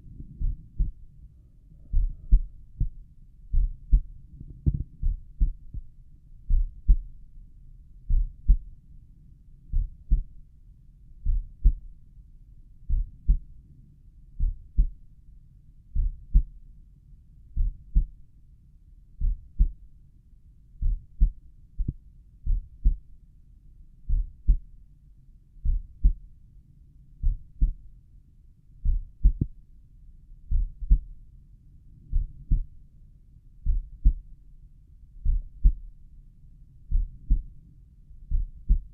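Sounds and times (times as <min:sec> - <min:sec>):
heartbeat through stethoscope: 0:00.0 - 0:01.1, 0:01.8 - 0:07.2, 0:08.0 - 0:08.7, 0:09.7 - 0:10.4, 0:11.2 - 0:11.9, 0:12.9 - 0:13.5, 0:14.4 - 0:15.0, 0:16.0 - 0:16.6, 0:17.6 - 0:18.2, 0:19.2 - 0:19.8, 0:20.8 - 0:23.1, 0:24.1 - 0:24.7, 0:25.6 - 0:26.2, 0:27.2 - 0:27.9, 0:28.8 - 0:29.6, 0:30.5 - 0:31.2, 0:32.1 - 0:32.8, 0:33.6 - 0:34.3, 0:35.2 - 0:36.0, 0:36.9 - 0:37.6, 0:38.3 - 0:38.9.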